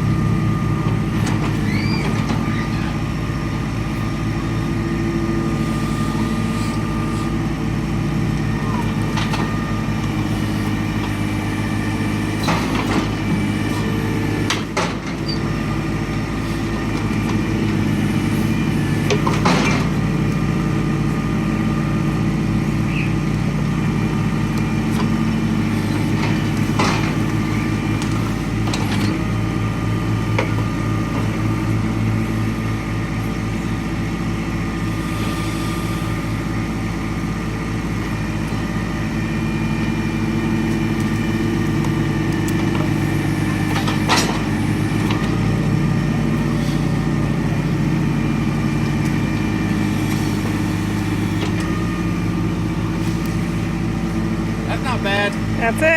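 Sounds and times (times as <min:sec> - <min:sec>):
tractor diesel engine running: 0:00.0 - 0:55.9
metallic knocks from backhoe: 0:13.8 - 0:15.5, 0:19.0 - 0:20.0, 0:26.0 - 0:27.4, 0:43.7 - 0:45.4.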